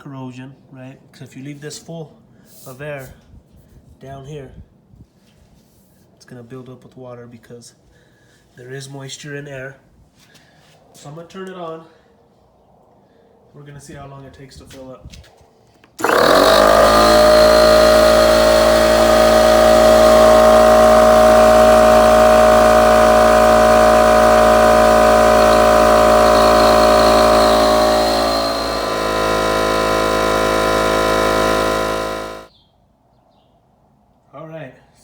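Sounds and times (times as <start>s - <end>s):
air compressor running: 16.0s - 32.5s.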